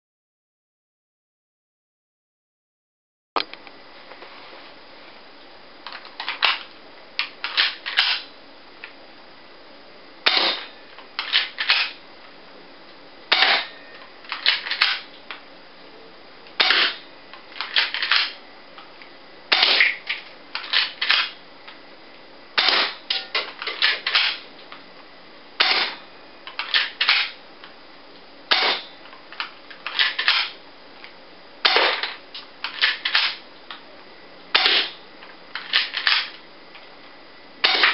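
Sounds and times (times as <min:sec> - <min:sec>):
spring airsoft pistol cocked and fired: 0:10.3 - 0:10.6, 0:22.6 - 0:23.2, 0:25.6 - 0:26.0, 0:28.5 - 0:28.9, 0:34.6 - 0:35.0.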